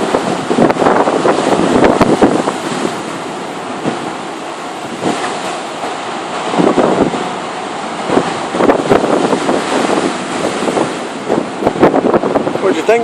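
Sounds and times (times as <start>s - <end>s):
storm surf rushing: 0.0s - 13.0s
wind buffeting microphone: 0.0s - 13.0s.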